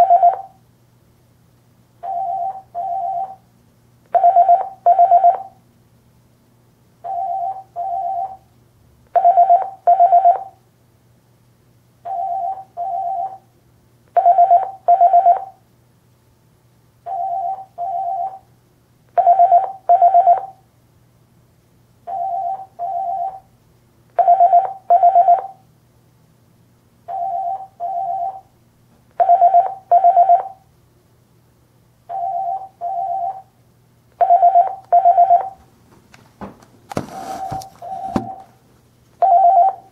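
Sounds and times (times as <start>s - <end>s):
telephone ringing: 0.0s - 0.5s, 2.0s - 3.4s, 4.2s - 5.6s, 7.1s - 8.4s, 9.2s - 10.6s, 14.2s - 15.6s, 17.1s - 18.4s, 19.2s - 20.6s, 24.2s - 25.6s, 29.2s - 30.6s, 34.2s - 35.6s, 37.2s - 38.6s, 39.2s - 39.9s.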